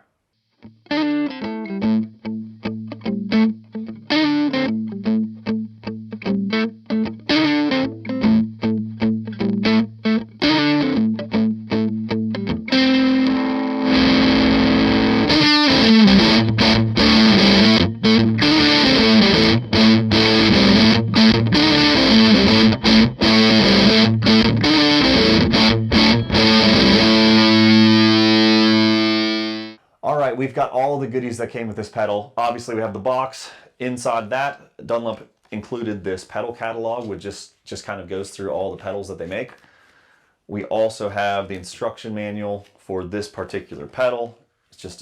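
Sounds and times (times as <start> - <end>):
distorted electric guitar: 0.6 - 29.8.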